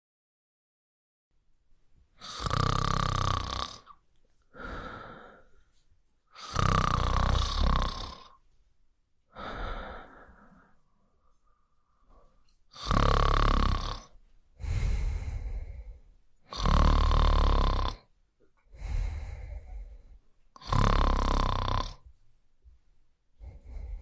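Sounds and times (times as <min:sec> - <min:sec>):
person snoring: 0:02.2 - 0:05.5, 0:06.3 - 0:08.4, 0:09.3 - 0:10.8, 0:12.7 - 0:18.1, 0:18.7 - 0:22.0, 0:23.4 - 0:24.0.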